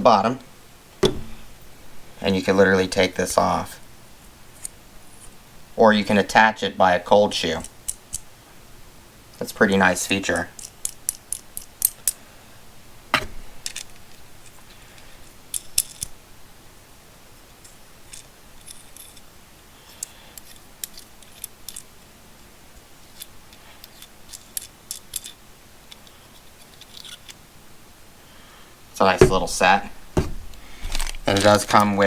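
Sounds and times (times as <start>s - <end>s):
faint rustling: 28.3s - 32.0s.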